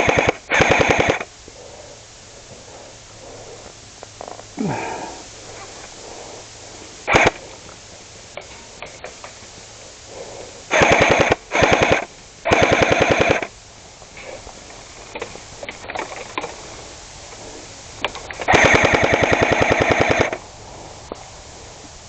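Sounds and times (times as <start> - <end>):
airsoft gun full-auto bursts: 0.0 - 1.3, 7.0 - 7.5, 10.7 - 13.6, 18.3 - 20.4.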